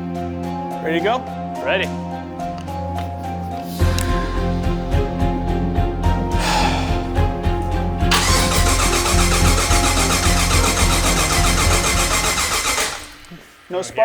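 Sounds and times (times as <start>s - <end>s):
background music with steady beat: 0.0s - 14.0s
engine cranking by starter: 8.0s - 13.8s.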